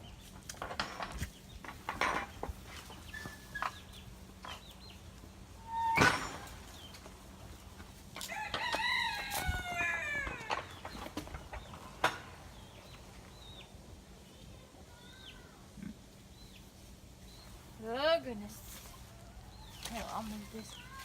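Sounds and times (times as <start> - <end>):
rooster crowing: 8.2 - 10.7.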